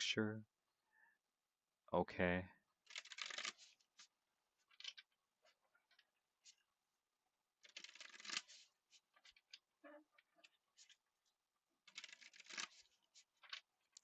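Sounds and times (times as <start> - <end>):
cards being shuffled: 2.9 - 5.1, 7.6 - 9.7, 11.9 - 14.0.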